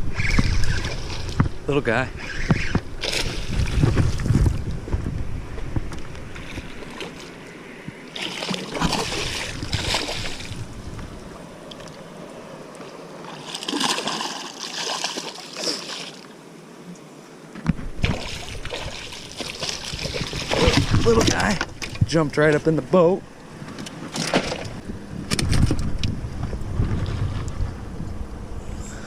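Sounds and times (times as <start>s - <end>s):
water splashing around boat: 0.0s - 4.8s, 5.9s - 7.4s, 8.0s - 16.4s, 17.8s - 22.6s
wind buffeting microphone: 0.0s - 12.1s, 17.7s - 29.0s.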